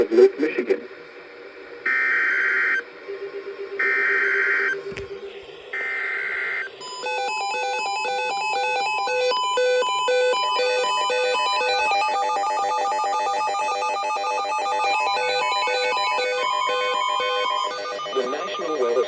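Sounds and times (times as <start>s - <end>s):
digital data tones: 5.7s - 19.0s
electronic alert melody beeps: 14.4s - 19.0s.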